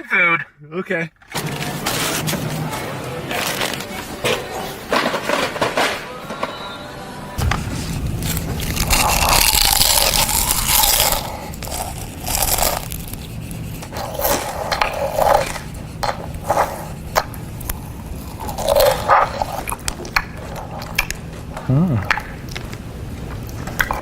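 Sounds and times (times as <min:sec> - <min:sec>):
food crunching into megaphone: 0:08.4 - 0:13.3.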